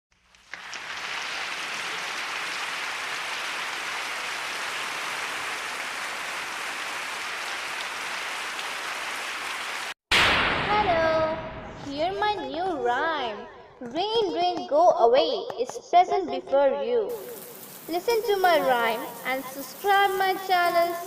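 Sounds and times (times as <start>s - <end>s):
steady rain falling: 0.1s - 10.0s, 17.1s - 21.0s.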